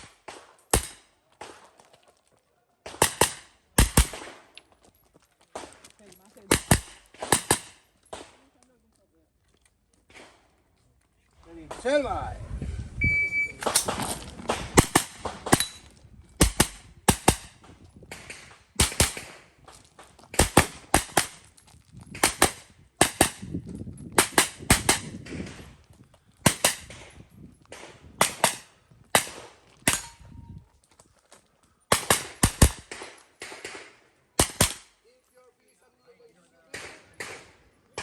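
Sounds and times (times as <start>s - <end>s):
gunshots: 0.0s - 1.7s, 2.9s - 4.5s, 6.5s - 8.4s, 13.6s - 15.8s, 16.4s - 19.6s, 20.3s - 21.4s, 22.2s - 23.5s, 24.2s - 25.7s, 26.4s - 27.1s, 27.7s - 30.2s, 31.9s - 35.0s, 36.7s - 38.0s.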